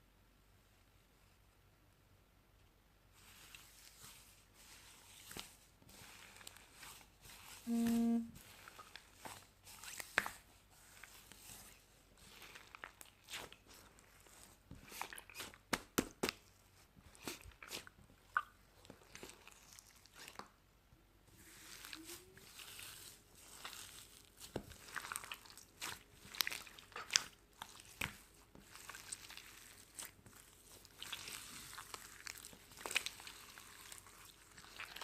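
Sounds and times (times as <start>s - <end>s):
short beep: 7.7s - 8.3s.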